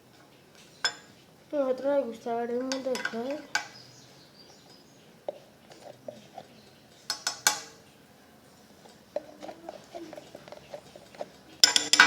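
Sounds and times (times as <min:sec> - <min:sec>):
spoon clinking against dish: 0:00.8 - 0:01.1, 0:07.1 - 0:07.8, 0:11.6 - 0:12.0.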